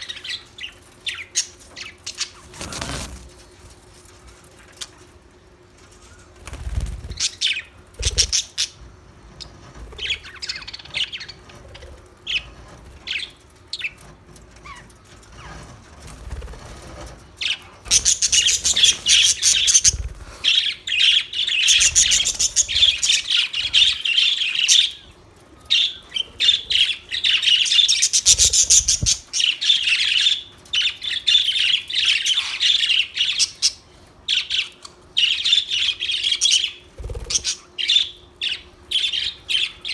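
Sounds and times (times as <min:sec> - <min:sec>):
budgerigars chirping: 0:07.0 - 0:08.8, 0:10.0 - 0:11.4, 0:17.5 - 0:25.1, 0:25.7 - 0:39.9.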